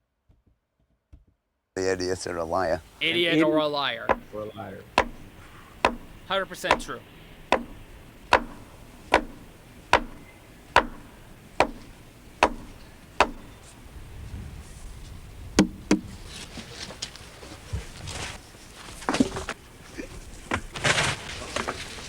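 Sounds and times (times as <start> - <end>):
hand tool striking something solid: 4.1 - 13.6, 15.6 - 16.1.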